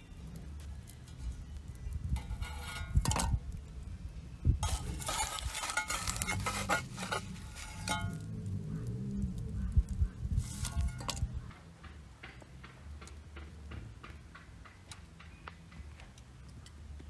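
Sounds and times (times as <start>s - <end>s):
metal parts clinking and scraping: 2.2s - 3.4s, 4.6s - 8.2s, 10.4s - 11.3s.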